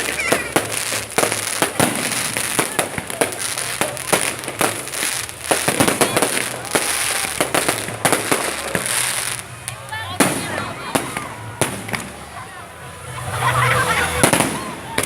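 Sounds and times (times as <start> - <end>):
fireworks bangs: 0.0 - 12.6, 13.5 - 15.0
fireworks crackling: 0.0 - 15.0.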